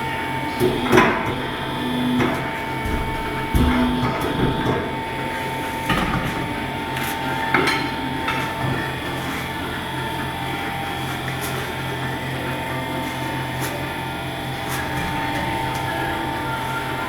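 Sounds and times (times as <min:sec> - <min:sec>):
machine hum: 0:00.0 - 0:17.0.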